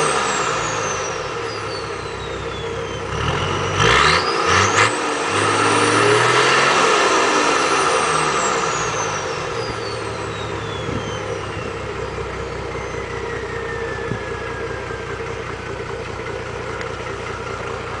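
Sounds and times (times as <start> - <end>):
vehicle engine idling: 0.0 - 18.0
high whine gliding down: 5.2 - 18.0.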